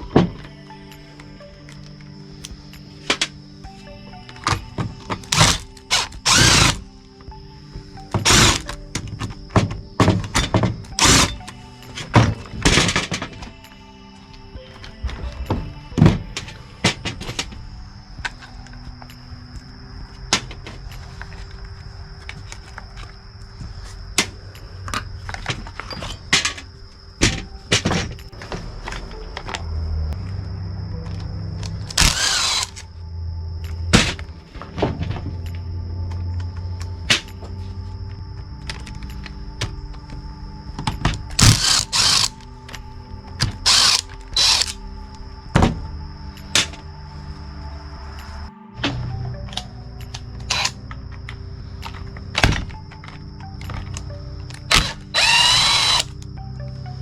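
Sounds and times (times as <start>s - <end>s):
hand tools and plastic parts clicking: 1.2s - 6.9s, 8.1s - 13.8s, 14.7s - 19.2s, 20.2s - 23.2s, 23.8s - 29.7s, 31.0s - 32.9s, 38.6s - 44.8s, 48.8s - 56.3s
ratcheting bursts: 5.3s - 6.8s, 32.0s - 32.8s, 41.4s - 42.4s, 43.7s - 44.8s, 54.7s - 56.1s.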